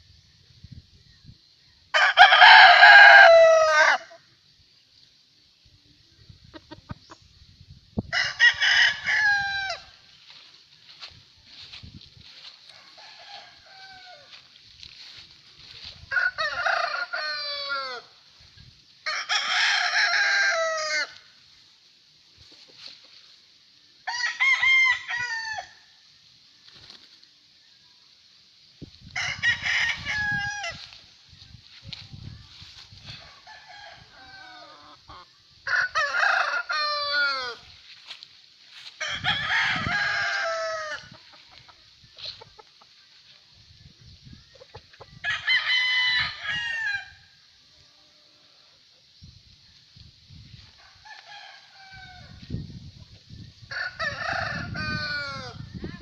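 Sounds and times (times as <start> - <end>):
roosters crowing: 1.9 - 4.3, 8.1 - 11.0, 11.6 - 18.3, 19.0 - 21.4, 24.0 - 26.0, 29.0 - 42.7, 44.8 - 48.8, 50.6 - 52.7, 53.5 - 56.0.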